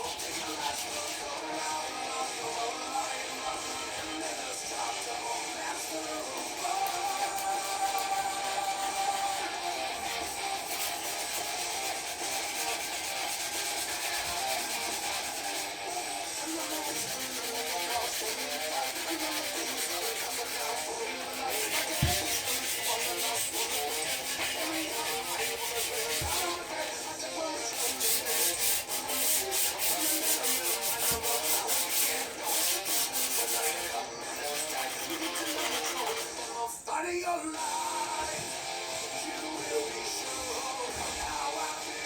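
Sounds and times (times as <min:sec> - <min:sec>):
sandpaper rubbing on metal: 0:00.0 - 0:01.4, 0:06.4 - 0:27.1, 0:27.7 - 0:36.4.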